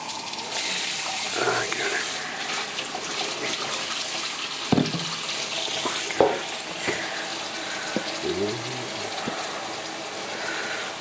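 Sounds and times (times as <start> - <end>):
water running: 0.0 - 11.0
short knocks: 4.7 - 5.2.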